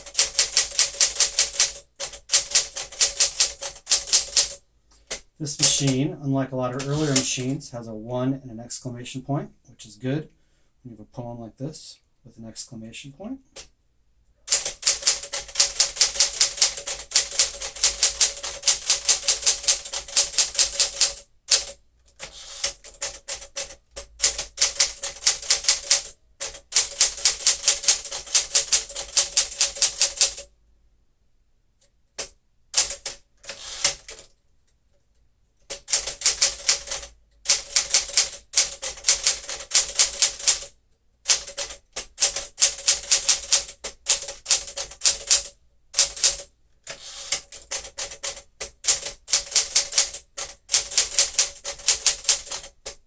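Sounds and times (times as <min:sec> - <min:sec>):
manual typewriter typing: 0:00.0 - 0:06.1, 0:06.8 - 0:07.6, 0:14.5 - 0:30.5, 0:32.2 - 0:34.4, 0:35.7 - 0:53.0.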